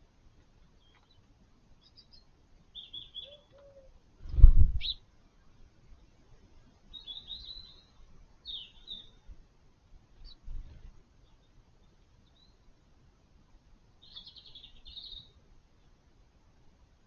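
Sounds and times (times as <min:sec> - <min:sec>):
small birds chirping: 0:00.0 - 0:05.1, 0:06.8 - 0:09.4, 0:10.0 - 0:12.9, 0:13.5 - 0:16.1.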